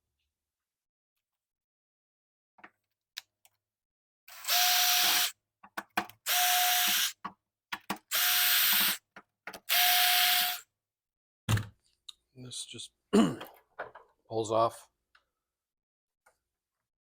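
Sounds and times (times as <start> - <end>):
power screwdriver whine: 4.3 - 5.3, 6.3 - 7.2, 8.1 - 9.0, 9.7 - 10.6.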